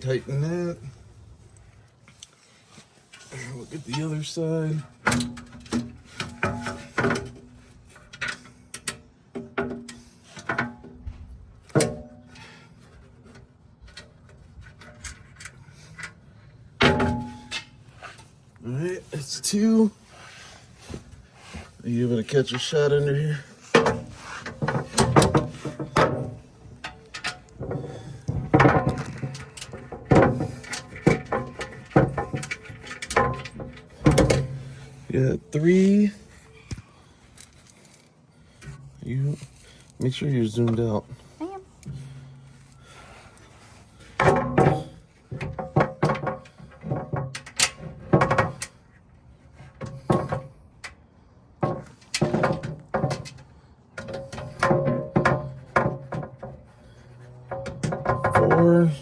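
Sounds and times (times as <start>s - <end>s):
metal clunks and knocks: 4.8s - 18.3s, 23.7s - 35.1s, 44.1s - 48.8s, 49.5s - 59.0s.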